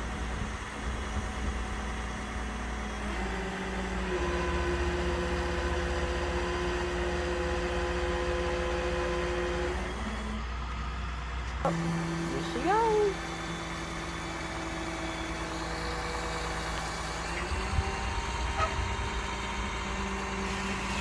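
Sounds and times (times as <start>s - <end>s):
tow truck engine rumble: 0.0s - 21.0s
steady mechanical whine: 11.4s - 21.0s.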